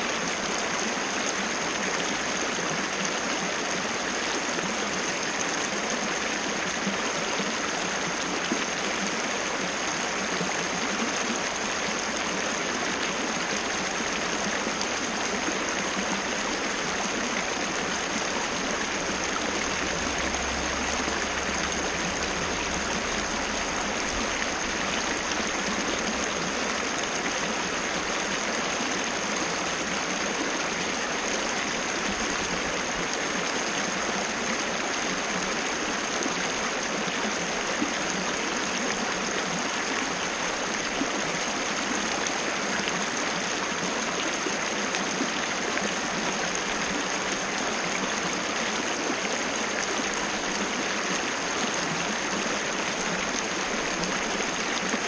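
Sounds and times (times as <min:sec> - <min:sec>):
waterfall rushing: 0:16.2 - 0:30.1.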